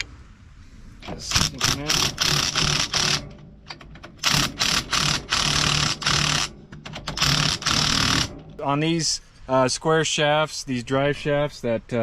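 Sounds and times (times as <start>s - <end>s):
cordless impact wrench bursts: 1.0s - 8.6s.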